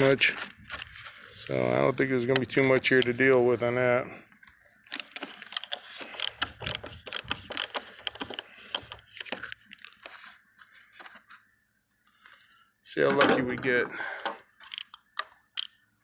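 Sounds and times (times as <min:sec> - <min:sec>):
metal tool clicking and scraping: 0:04.9 - 0:09.8.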